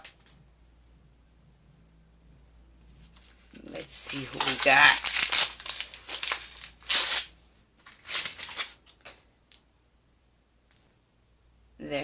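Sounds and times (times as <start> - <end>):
plastic packaging crinkling: 3.0 - 9.6.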